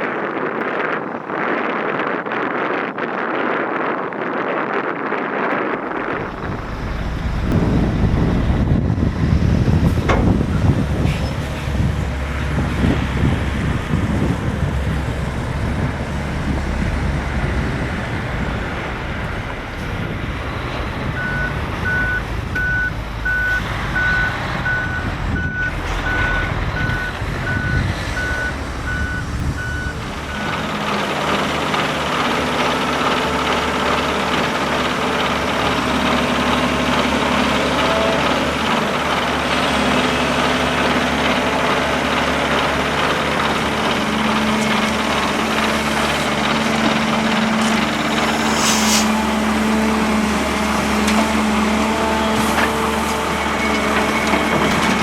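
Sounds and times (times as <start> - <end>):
diesel engine rumbling: 0.0 - 55.0
engine running steadily: 5.8 - 55.0
reversing alarm beeping: 21.1 - 30.6.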